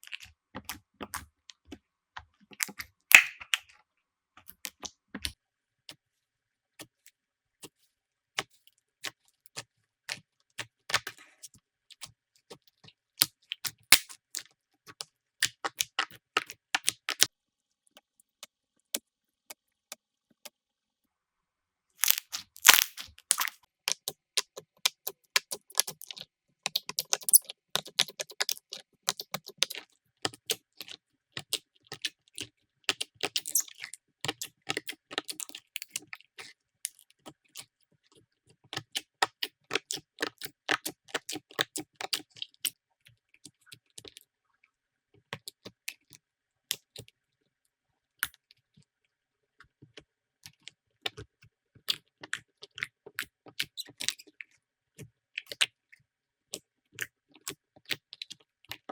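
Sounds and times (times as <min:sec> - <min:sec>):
slime squeezed by hand: 0:02.6 - 0:03.6, 0:22.0 - 0:23.6.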